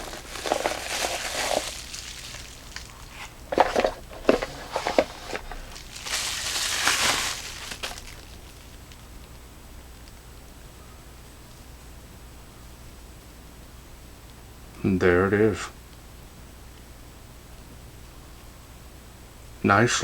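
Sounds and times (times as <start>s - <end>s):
rustling scrape: 0.0s - 8.8s
packaging knocks and clicks: 0.0s - 9.0s.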